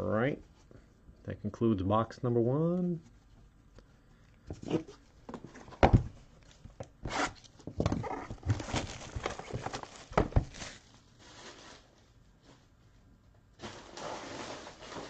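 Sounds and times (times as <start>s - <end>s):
rustling and tearing packaging: 6.4s - 12.7s, 13.6s - 15.0s.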